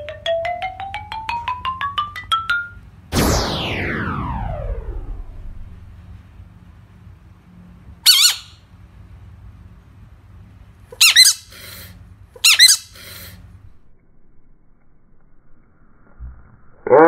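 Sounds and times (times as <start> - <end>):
low steady hum: 0.0 - 8.0
frog squeaking: 8.1 - 8.6, 11.0 - 11.6, 12.4 - 13.0.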